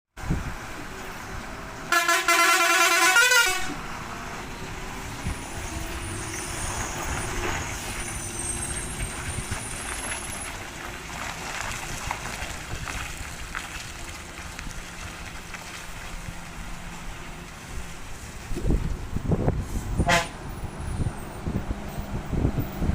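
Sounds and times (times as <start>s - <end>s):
truck engine and road noise: 0.1s - 22.9s
truck horn: 1.9s - 3.9s, 20.0s - 20.5s.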